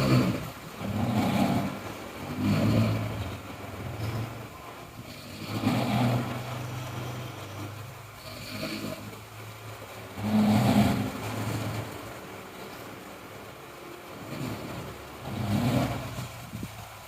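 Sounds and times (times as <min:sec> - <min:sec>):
person snoring heavily: 0:00.0 - 0:04.4, 0:05.0 - 0:09.2, 0:10.1 - 0:11.9, 0:14.2 - 0:16.7.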